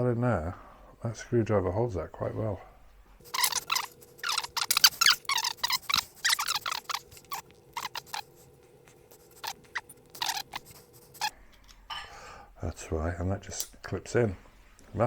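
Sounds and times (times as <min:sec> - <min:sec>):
faint steady hum: 0:00.0 - 0:15.0
screwdriver bit squeaking: 0:03.3 - 0:08.3, 0:09.1 - 0:11.3.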